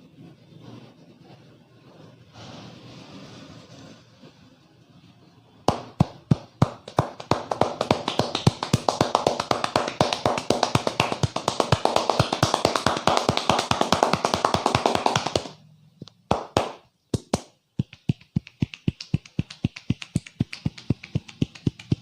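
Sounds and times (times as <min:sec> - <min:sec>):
faint street background: 0:00.0 - 0:07.2, 0:15.5 - 0:22.0
hands slapping a head: 0:05.7 - 0:15.6, 0:16.3 - 0:22.0.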